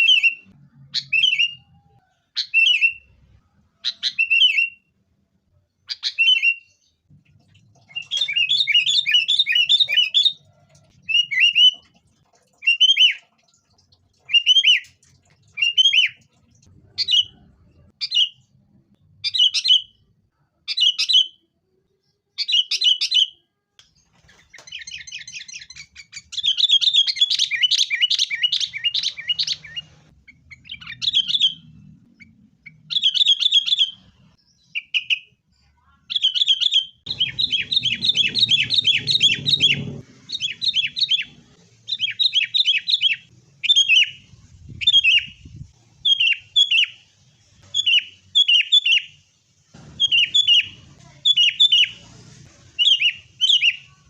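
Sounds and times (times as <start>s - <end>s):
bulbul calling: 50.0s - 52.0s.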